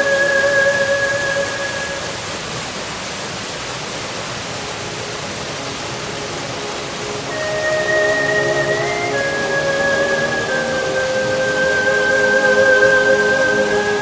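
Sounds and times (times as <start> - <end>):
background music: 0.0 - 2.0, 4.8 - 14.0
waterfall rushing: 0.0 - 14.0.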